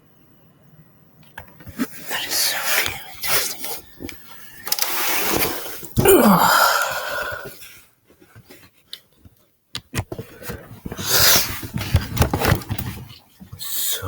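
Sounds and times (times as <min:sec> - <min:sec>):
breathy exhale: 0:06.0 - 0:07.7.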